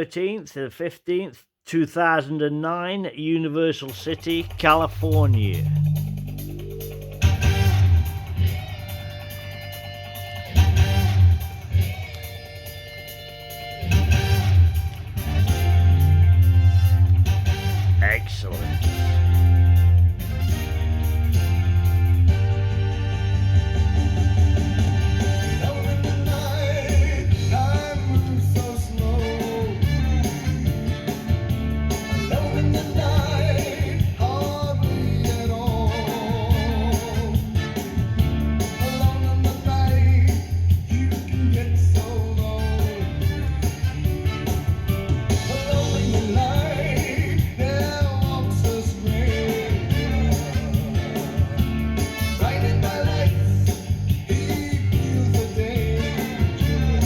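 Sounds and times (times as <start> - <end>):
heavy bass line: 4.0 - 8.6, 13.9 - 23.3, 40.9 - 57.0
guitar: 4.6 - 57.0
rock song with sung vocal: 25.3 - 44.3, 45.4 - 57.0.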